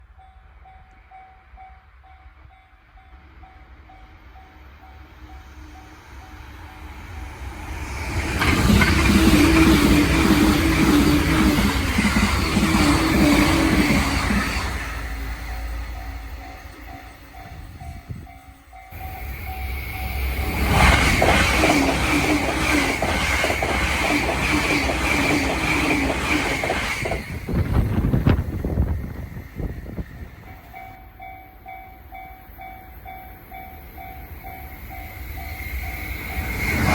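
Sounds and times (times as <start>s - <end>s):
train rushing past: 1.5s - 36.9s
level crossing warning bell: 8.8s - 20.6s, 30.4s - 36.2s.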